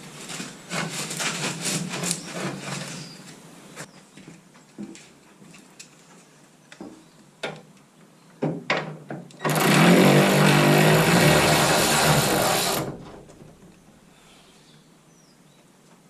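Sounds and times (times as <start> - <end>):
power tool running: 9.4 - 13.0.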